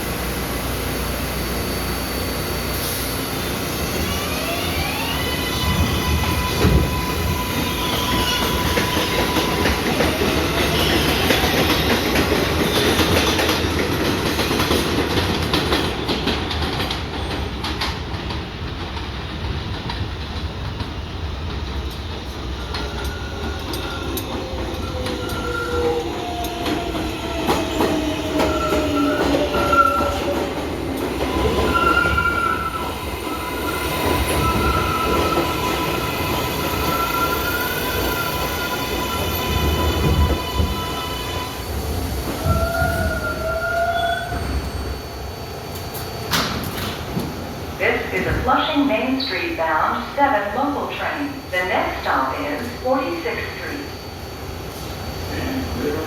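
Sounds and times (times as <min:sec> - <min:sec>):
train wheels rumbling: 0:00.0 - 0:54.0
train motor whine: 0:00.4 - 0:11.8, 0:22.3 - 0:47.6
wheel squeal: 0:22.8 - 0:26.5, 0:31.3 - 0:41.8, 0:42.4 - 0:45.2.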